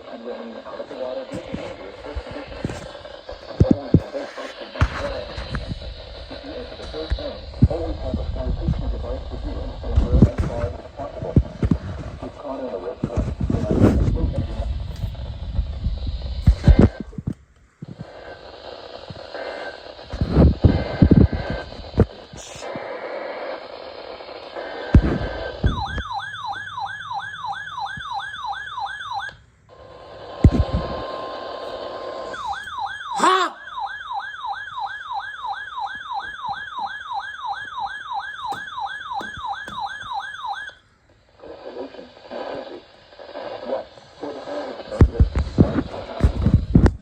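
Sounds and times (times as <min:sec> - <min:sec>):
electronic siren yelping: 0:24.9 - 0:29.4, 0:30.5 - 0:40.8.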